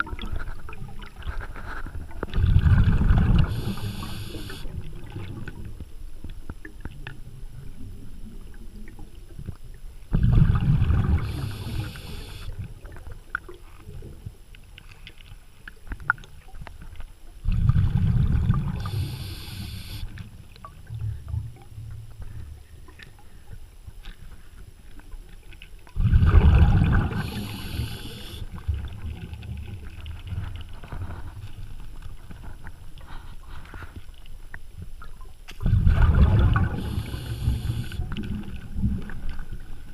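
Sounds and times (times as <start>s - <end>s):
small crackles: 0.1s - 2.4s, 27.1s - 35.7s.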